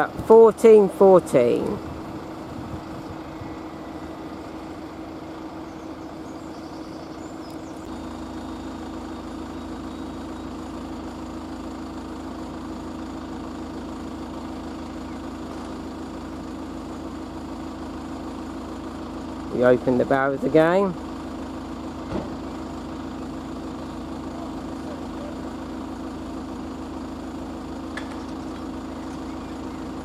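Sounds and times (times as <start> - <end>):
engine idling: 0.0 - 30.0
deep rumble: 1.4 - 11.5.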